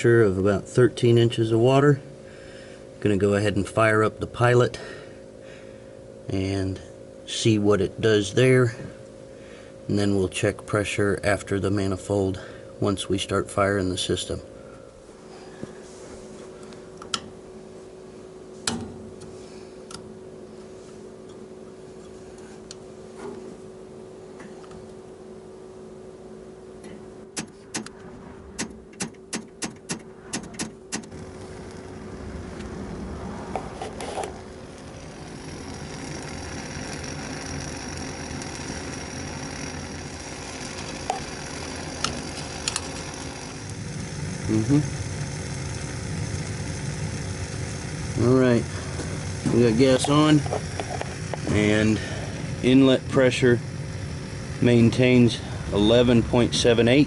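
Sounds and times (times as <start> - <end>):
pilot igniter clicking: 16.6 - 17.4, 18.6 - 20.1, 26.8 - 28.0, 28.6 - 57.0
gas burner rushing: 27.3 - 57.0.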